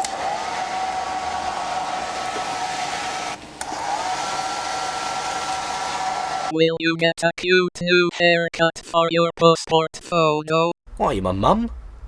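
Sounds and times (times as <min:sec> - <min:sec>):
hair dryer running: 0:00.0 - 0:06.5.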